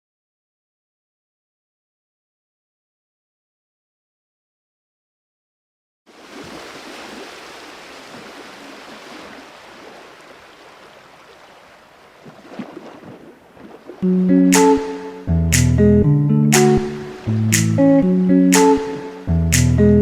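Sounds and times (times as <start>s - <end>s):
sea water washing: 6.1s - 14.1s
acoustic guitar music: 14.0s - 20.0s.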